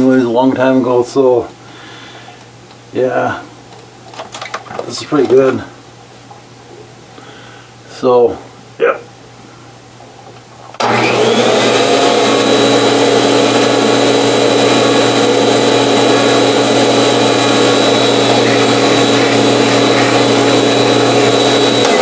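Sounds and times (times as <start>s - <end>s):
vacuum cleaner motor humming and whining: 10.8s - 22.0s.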